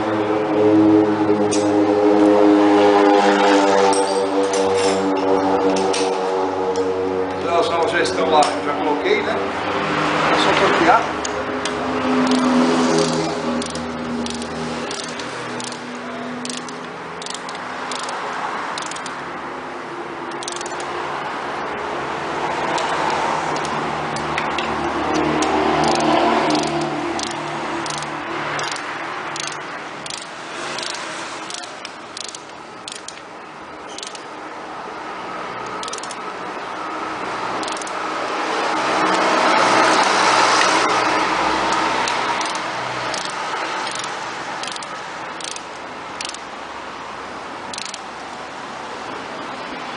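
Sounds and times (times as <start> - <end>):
engine-like drone: 0.0 - 49.9
ratchet and hand tool clicks: 11.2 - 19.2, 20.3 - 20.9, 22.7 - 33.3, 33.9 - 34.3, 35.6 - 36.2, 37.6 - 38.0, 39.0 - 40.8, 41.6 - 46.5, 47.7 - 48.1.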